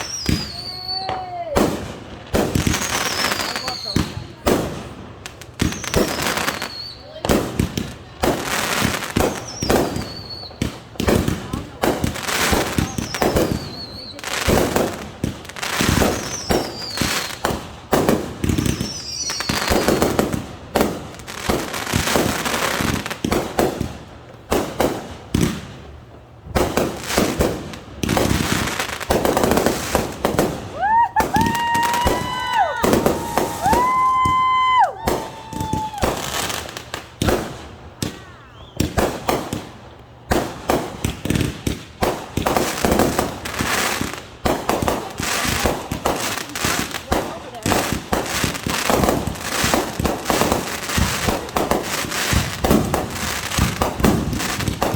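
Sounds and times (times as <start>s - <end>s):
firework whistles: 0.0s - 1.8s, 2.5s - 4.4s, 5.6s - 7.2s, 8.8s - 11.2s, 12.5s - 14.8s, 15.6s - 17.6s, 18.4s - 20.2s, 28.1s - 36.8s, 38.0s - 39.7s
fireworks bangs and crackle: 0.0s - 54.9s.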